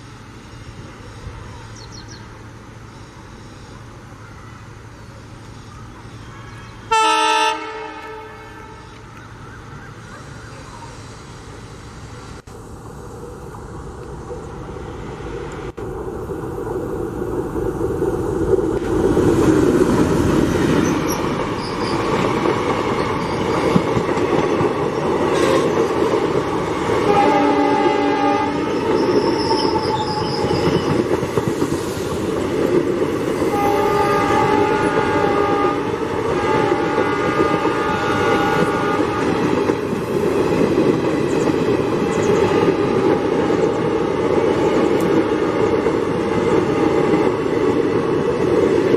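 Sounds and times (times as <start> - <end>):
diesel locomotive engine running: 0.0 - 48.9
rail noise: 0.0 - 48.9
locomotive horn blasts: 6.9 - 8.9, 25.3 - 25.8, 27.1 - 29.5, 33.5 - 39.4.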